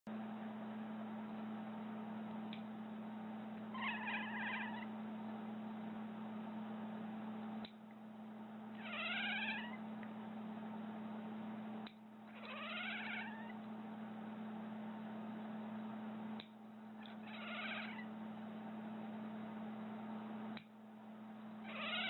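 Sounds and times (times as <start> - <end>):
low hum: 0.1 - 22.0
cat meowing: 3.7 - 4.9, 8.8 - 9.8, 12.3 - 13.6, 17.0 - 18.1, 21.6 - 22.0.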